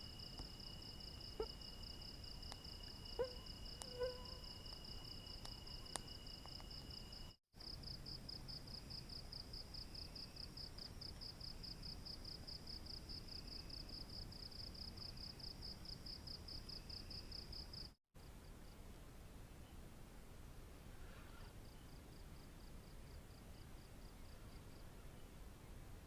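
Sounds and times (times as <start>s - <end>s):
high-pitched insect trill: 0.0s - 7.4s
insect pulsing call: 0.0s - 7.4s.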